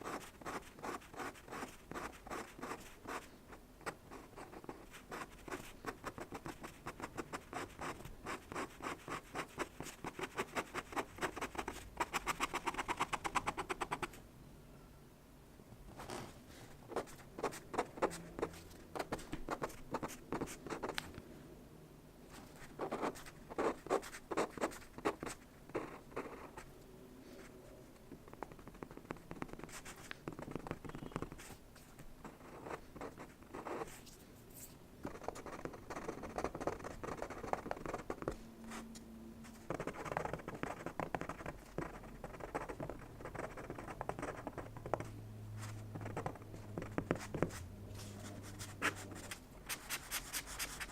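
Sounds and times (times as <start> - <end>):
pen scratching on paper: 0.0 - 14.1, 16.9 - 21.0, 22.6 - 26.6, 32.3 - 34.0, 35.0 - 38.3, 39.6 - 50.9.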